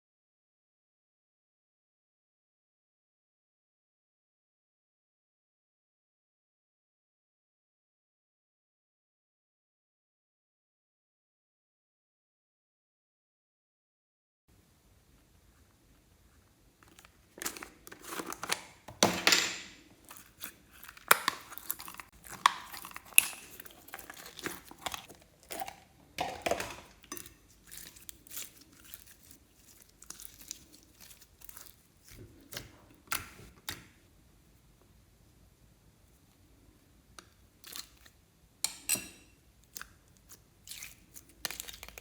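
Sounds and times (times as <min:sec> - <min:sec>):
tearing and crinkling: 0:16.8 - 0:18.8, 0:20.0 - 0:25.8, 0:27.6 - 0:32.5.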